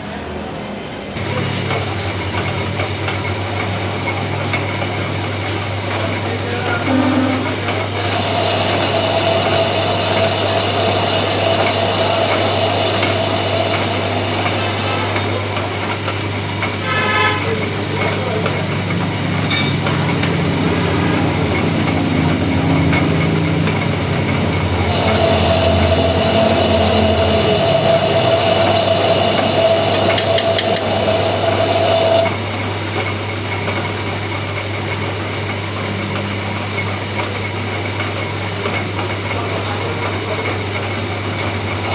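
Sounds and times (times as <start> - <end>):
metal lathe running: 1.2 - 41.9
high whining tone: 6.7 - 15.3, 24.2 - 32.3.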